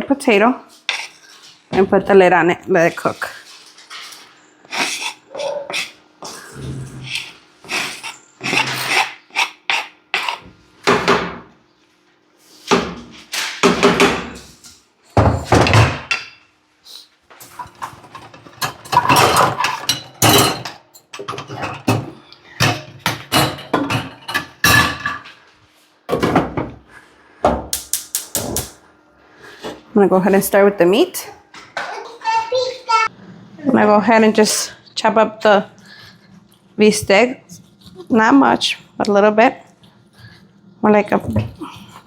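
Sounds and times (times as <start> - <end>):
cookware clattering: 17.5 - 25.4.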